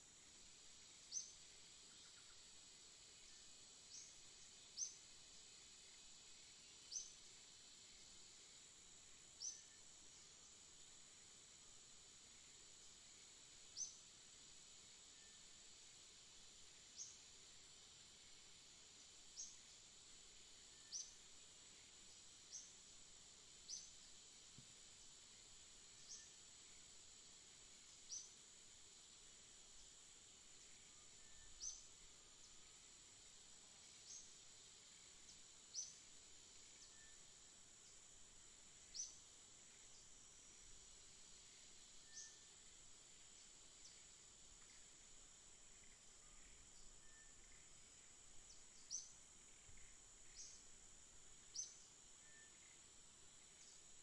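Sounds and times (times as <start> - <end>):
faint bird chirps: 1.0 - 2.5, 9.2 - 10.5, 20.6 - 22.8, 26.0 - 26.8, 27.9 - 28.4, 30.5 - 32.8, 33.8 - 38.1, 38.8 - 40.8, 41.4 - 45.0, 45.6 - 54.0
faint high-pitched drone: 38.7 - 54.0.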